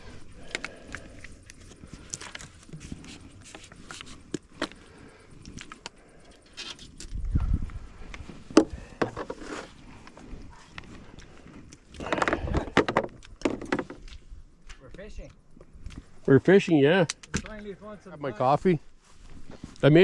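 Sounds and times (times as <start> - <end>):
footsteps: 18.6 - 20.0.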